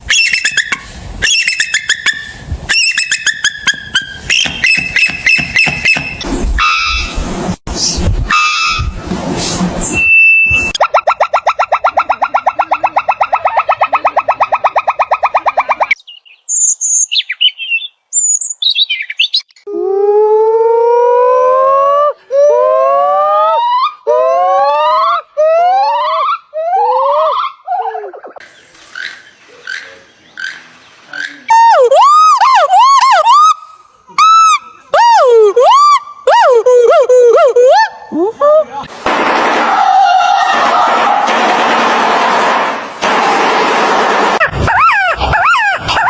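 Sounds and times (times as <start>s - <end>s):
bird calling sharp notes: 0.0s - 19.5s, 28.2s - 34.8s, 44.4s - 46.0s
noisier sound: 3.8s - 16.0s
birds chirping: 10.8s - 19.7s, 27.2s - 31.7s
low bird call rising in pitch: 44.6s - 46.0s.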